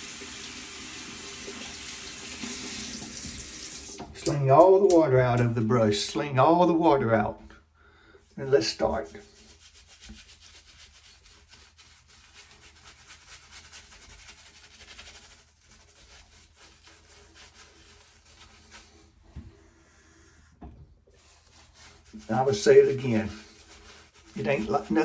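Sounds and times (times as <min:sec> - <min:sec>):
shaving brush scrubbing face: 0:08.4 - 0:19.2, 0:21.1 - 0:25.0.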